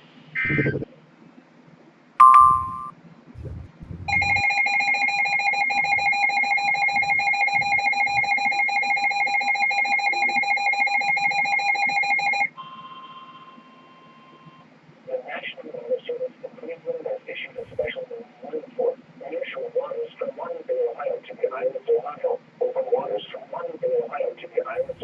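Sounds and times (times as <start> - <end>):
two-tone attention signal: 0.4 - 0.8, 2.2 - 2.9, 3.9 - 14.6
sharp beep: 2.2 - 2.9, 4.1 - 8.6
buzzy data burst: 2.2 - 4.5
faint steady tone: 2.2 - 14.7.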